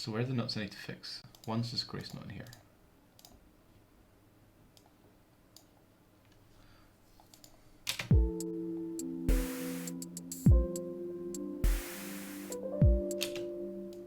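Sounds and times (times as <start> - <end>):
deep kick drum: 8.1 - 8.4, 10.5 - 10.8, 12.8 - 13.1
electronic music track: 8.1 - 14.0
held synth notes: 8.1 - 14.0
snare or clap burst: 9.3 - 10.0, 11.6 - 12.6
mouse and keyboard clicks: 13.1 - 13.4.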